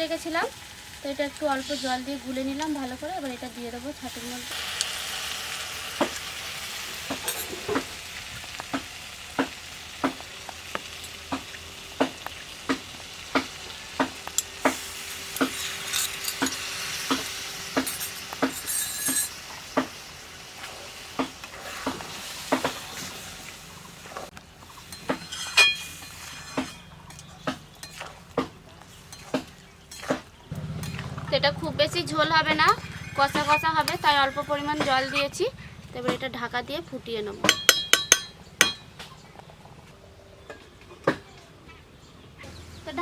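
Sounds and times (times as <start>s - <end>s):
food sizzling in a pan: 0.0s - 27.1s
spatula tapping a pan: 8.7s - 20.0s, 37.4s - 38.9s.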